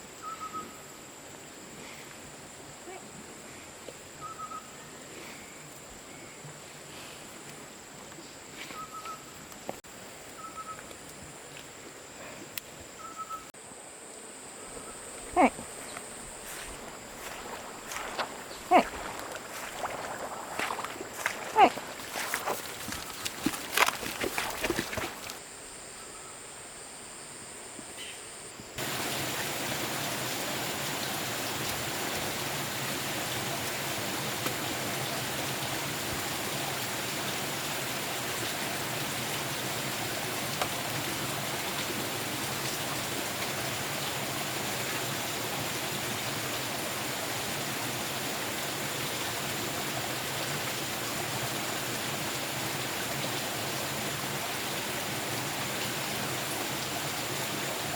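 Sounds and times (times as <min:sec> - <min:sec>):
running water rushing: 0:14.8 - 0:25.4, 0:28.8 - 0:57.9.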